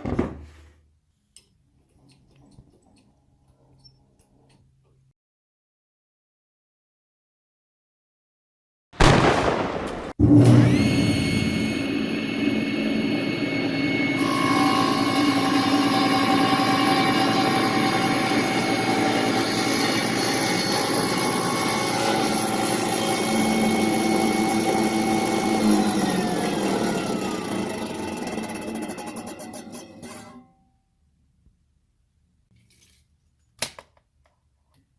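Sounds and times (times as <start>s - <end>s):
power saw motor whining: 10.4s - 29.5s.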